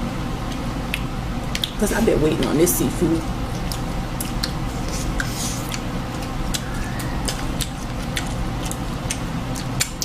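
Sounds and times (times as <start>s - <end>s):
low hum: 2.9s - 10.0s.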